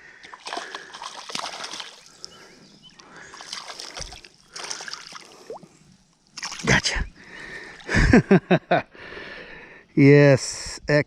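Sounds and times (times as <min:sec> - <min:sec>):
fish splashing at water surface: 0:00.2 - 0:02.1, 0:03.2 - 0:05.7.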